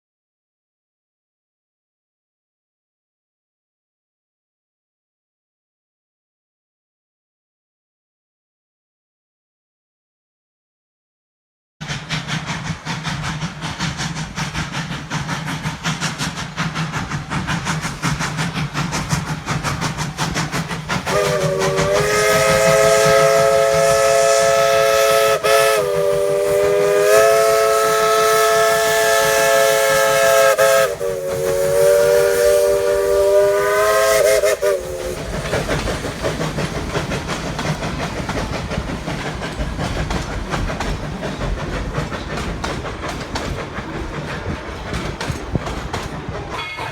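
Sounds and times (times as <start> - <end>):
train rumbling and clattering: 11.8 - 46.9
chime steam whistle blowing: 21.1 - 35.3, 46.5 - 46.9.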